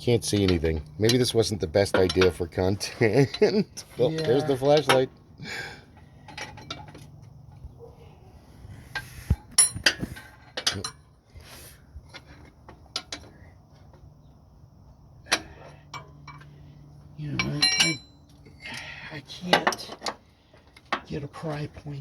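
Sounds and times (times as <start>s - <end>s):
metal tools clinking on engine parts: 0.0s - 7.7s, 8.9s - 11.2s, 15.2s - 22.0s.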